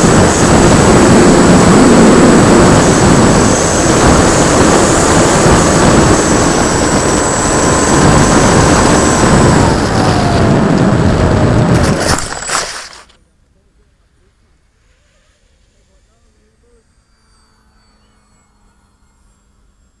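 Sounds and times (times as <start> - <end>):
rushing air: 0.0 - 12.9
model plane motor whine: 0.0 - 13.2, 14.1 - 20.0
fainter whine dropping in pitch: 0.0 - 20.0.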